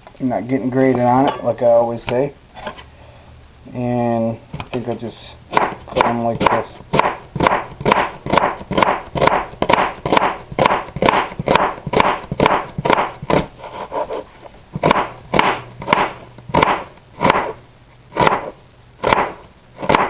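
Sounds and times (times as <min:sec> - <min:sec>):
knife slicing onion on board: 0:05.5 - 0:17.6, 0:18.2 - 0:20.0.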